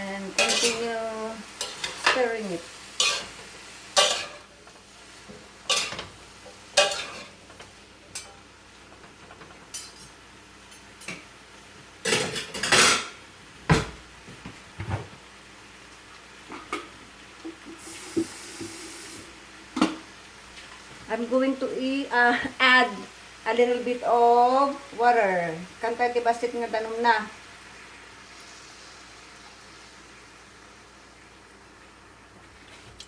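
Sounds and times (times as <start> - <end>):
faint frying sizzle: 0.0 - 33.0
utensil scraping a pan: 0.4 - 1.0, 1.6 - 6.2.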